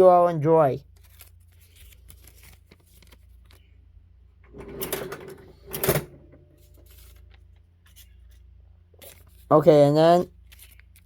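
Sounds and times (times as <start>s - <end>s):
cash drawer banging shut: 4.5s - 6.6s
cash drawer sliding: 4.5s - 6.8s.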